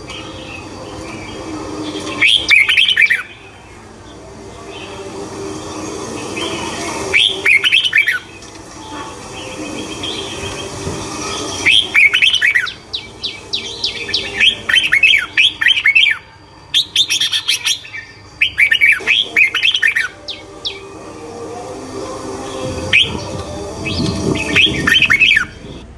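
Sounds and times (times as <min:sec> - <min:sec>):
songbird chirping: 0:00.0 - 0:25.8.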